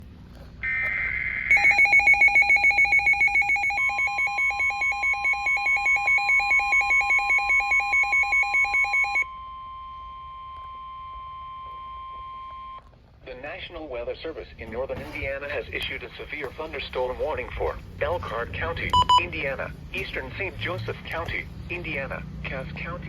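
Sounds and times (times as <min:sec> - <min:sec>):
pulsing electronic alarm beep: 0:00.6 - 0:12.8, 0:18.9 - 0:19.3
steady high alarm tone: 0:00.6 - 0:12.8, 0:18.9 - 0:19.4.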